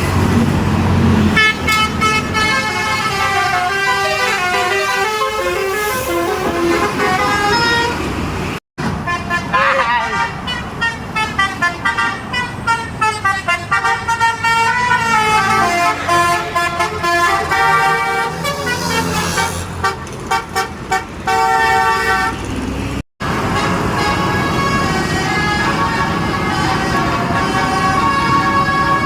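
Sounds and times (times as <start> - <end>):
vehicle noise: 0.0 - 29.0
musical air horn playing a tune: 1.4 - 8.1, 9.0 - 22.4, 23.4 - 29.0.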